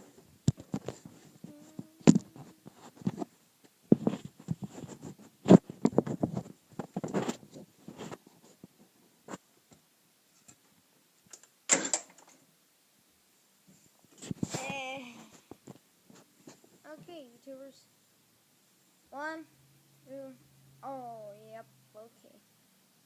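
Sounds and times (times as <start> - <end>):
rustling handling noise: 0.0 - 10.8.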